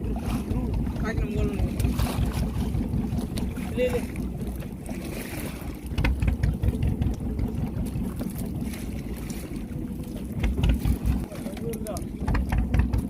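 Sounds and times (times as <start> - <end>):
boat engine running: 0.0 - 13.0.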